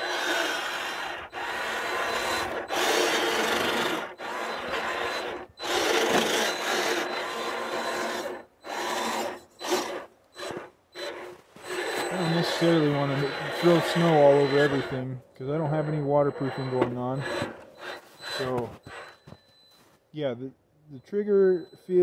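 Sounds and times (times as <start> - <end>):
toy car motor grinding: 0.0 - 15.0, 15.6 - 19.3
tyres churning through snow: 0.0 - 15.0.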